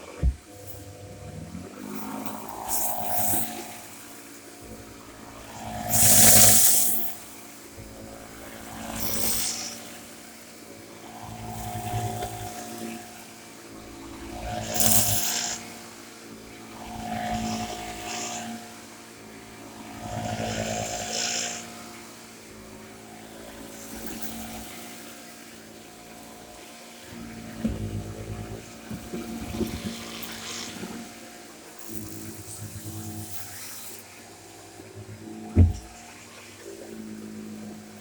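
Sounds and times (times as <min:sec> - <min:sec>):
vacuum cleaner motor running: 0:00.0 - 0:38.0
hissing air rushes: 0:05.9 - 0:07.0.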